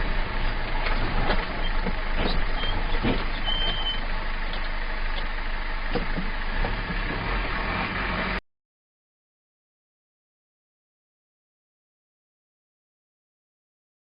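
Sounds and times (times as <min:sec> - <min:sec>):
heavy vehicle engine and road noise: 0:00.0 - 0:08.4.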